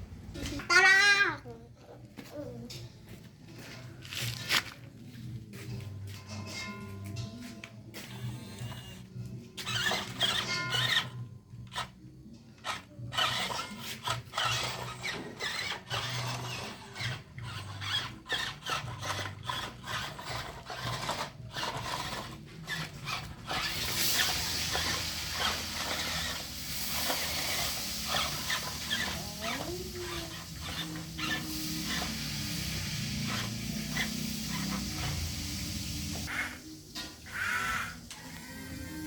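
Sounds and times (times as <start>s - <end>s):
small electric motors whining: 7.2s - 39.0s
hissing scraping noise: 23.5s - 39.0s.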